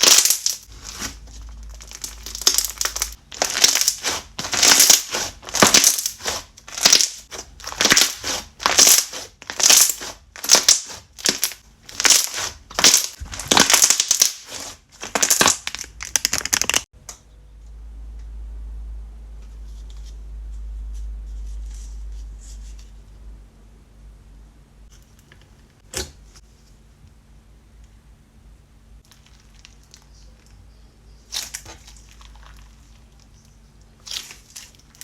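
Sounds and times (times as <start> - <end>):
slime squishing and crackling: 0.0 - 16.9, 29.0 - 30.5, 31.3 - 35.0.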